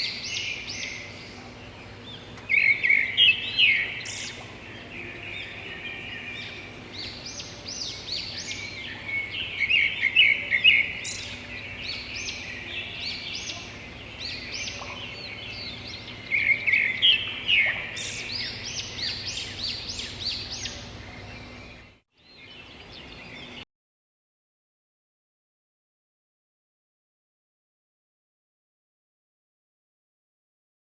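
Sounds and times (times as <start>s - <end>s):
songbirds chirping: 0.0s - 23.6s.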